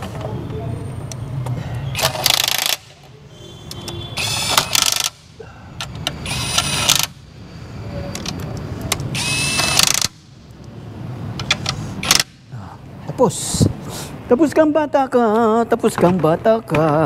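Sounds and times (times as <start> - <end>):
power tool whining in short bursts: 4.1 - 5.2, 6.2 - 7.2, 9.1 - 10.1.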